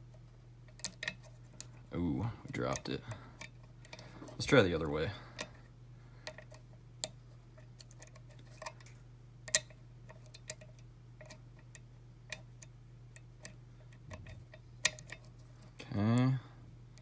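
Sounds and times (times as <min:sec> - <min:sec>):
low steady hum: 0:00.0 - 0:17.0
lock pick clicking in lock: 0:00.8 - 0:01.2, 0:09.5 - 0:11.4, 0:14.2 - 0:15.2.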